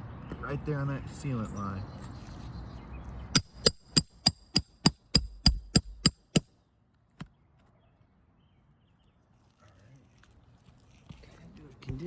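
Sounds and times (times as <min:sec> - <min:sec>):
hammer tapping on steel: 0:03.4 - 0:06.4.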